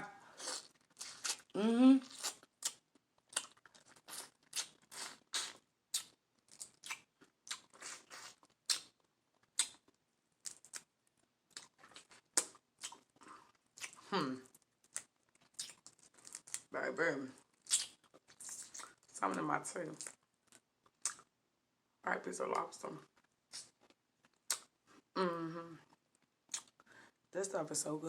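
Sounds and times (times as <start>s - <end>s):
wet chewing clicks and crunches: 0.6s - 1.5s, 2.1s - 16.7s, 17.4s - 19.1s, 19.9s - 21.3s, 23.2s - 24.7s, 26.1s - 26.9s
person humming: 1.6s - 2.0s, 25.2s - 25.8s.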